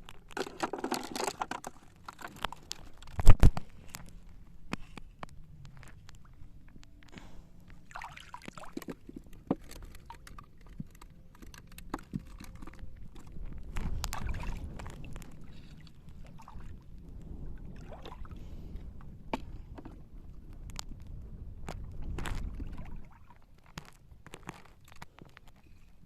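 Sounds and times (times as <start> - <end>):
seawater sloshing and splashing: 7.8 - 11.0, 11.6 - 16.9, 17.5 - 18.5, 22.1 - 23.6
steady low rumble: 12.6 - 23.3.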